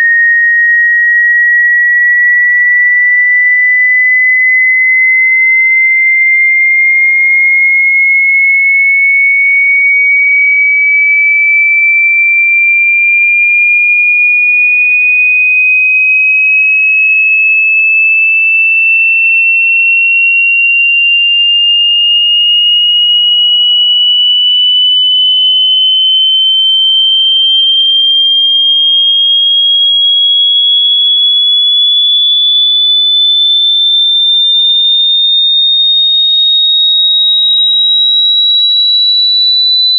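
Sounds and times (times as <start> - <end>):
rising sine-wave tone: 22.9 - 39.9.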